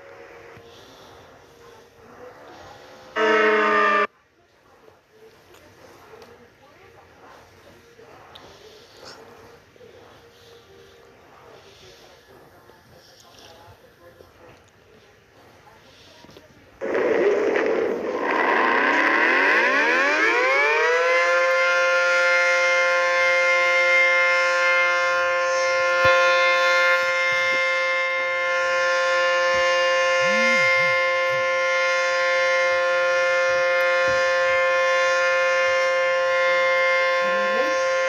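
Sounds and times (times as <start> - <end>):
warning siren winding up: 3.1 - 4.1, 16.8 - 38.0.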